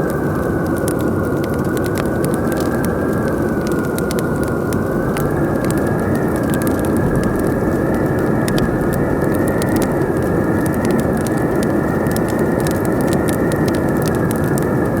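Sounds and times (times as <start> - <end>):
loud steady wind: 0.0 - 15.0
wood fire crackling and popping: 0.0 - 15.0.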